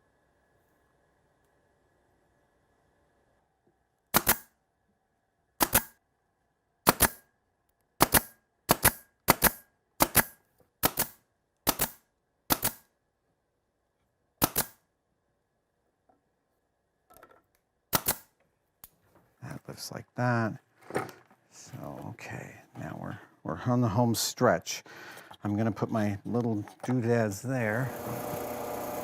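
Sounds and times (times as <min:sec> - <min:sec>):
workshop tool double snaps: 0:04.1 - 0:04.5, 0:05.6 - 0:06.0, 0:06.8 - 0:07.2, 0:08.0 - 0:12.9, 0:14.4 - 0:14.8, 0:17.9 - 0:18.3.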